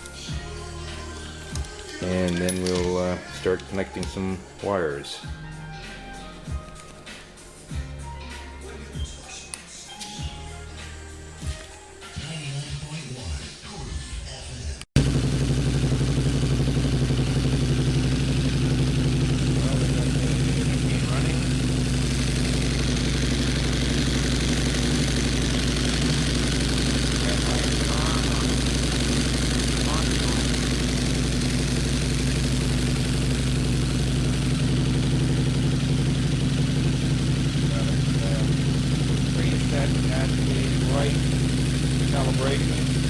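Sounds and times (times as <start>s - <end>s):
motorcycle engine idling: 15.0s - 43.0s.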